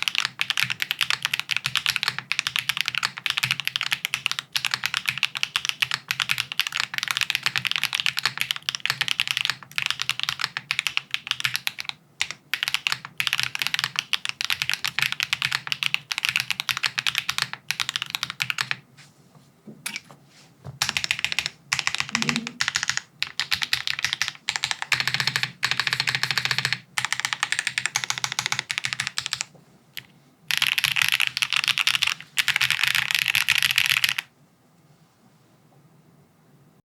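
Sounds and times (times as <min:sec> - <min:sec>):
mechanical keyboard typing: 0:00.0 - 0:18.8, 0:20.8 - 0:34.3.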